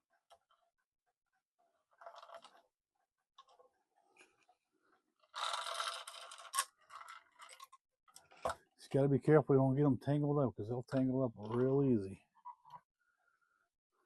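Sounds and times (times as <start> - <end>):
metal chain rattling and scraping: 2.0 - 2.6, 5.2 - 8.4.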